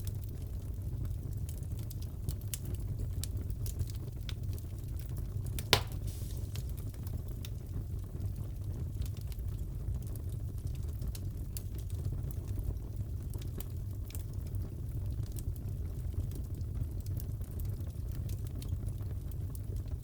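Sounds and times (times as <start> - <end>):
wood fire crackling: 0.0 - 20.0
loud fire pop: 5.6 - 6.8.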